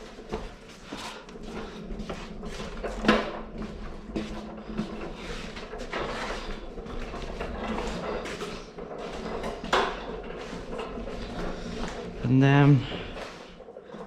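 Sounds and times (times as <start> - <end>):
parts rustling and knocking: 0.0 - 14.0.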